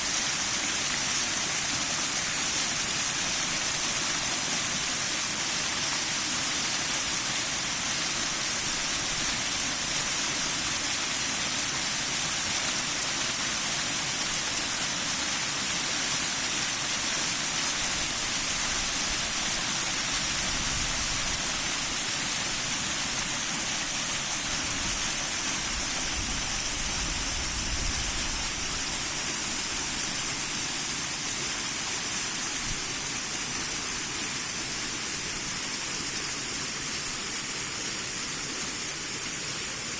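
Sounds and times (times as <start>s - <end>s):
water rushing over dam: 0.0s - 39.9s
wind rumbling on microphone: 25.6s - 28.8s.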